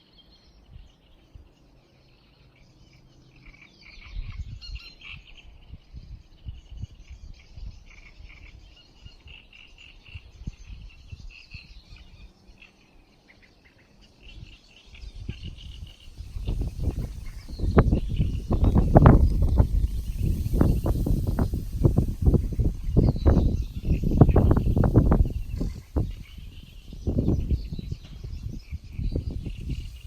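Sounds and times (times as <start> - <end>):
low rumbles: 16.0 - 30.0.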